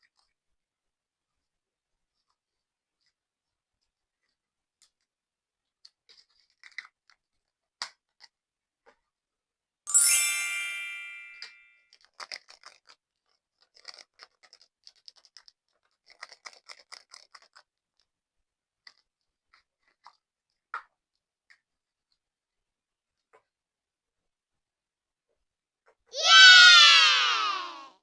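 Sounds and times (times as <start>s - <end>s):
bright ringing chime: 9.9s - 11.6s.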